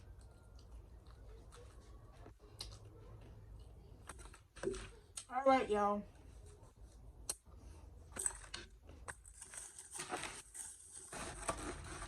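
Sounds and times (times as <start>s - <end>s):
food packaging crinkling: 9.1s - 12.0s.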